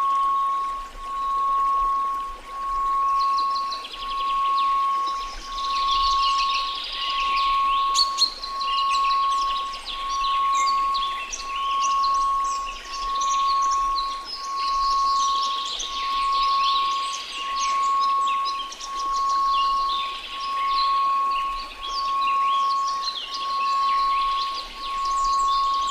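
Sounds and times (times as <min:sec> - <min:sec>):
birds chirping and trilling: 0:00.0 - 0:25.9
faint white noise hiss: 0:00.0 - 0:25.9
pulsing electronic tone: 0:00.0 - 0:25.9.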